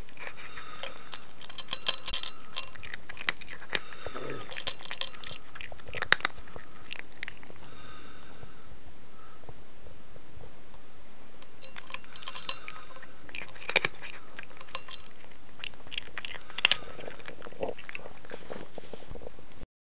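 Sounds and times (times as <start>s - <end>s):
cat chewing food: 0.0s - 8.6s, 11.4s - 19.6s
clinks against food dish: 0.2s - 3.7s, 11.6s - 15.3s.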